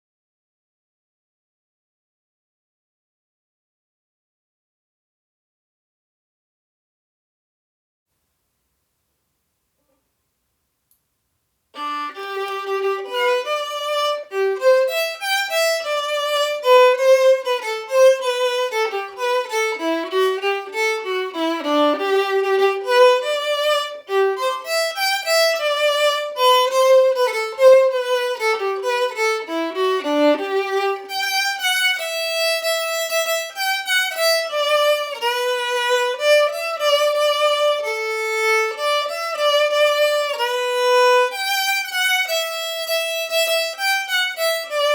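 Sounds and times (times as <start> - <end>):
solo violin melody: 11.7 - 44.9.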